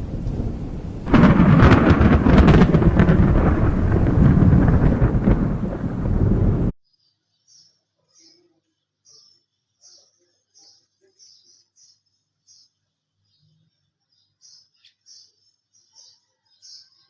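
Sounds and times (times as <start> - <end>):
thunder clap and rumble: 0.0 - 6.7.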